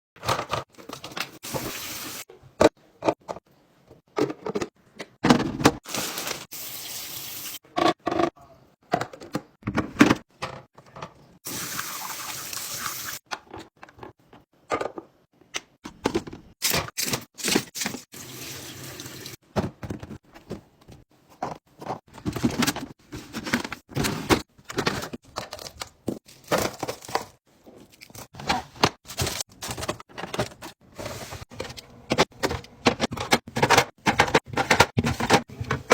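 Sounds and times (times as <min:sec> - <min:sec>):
containers knocking and clattering: 0:31.5 - 0:35.9.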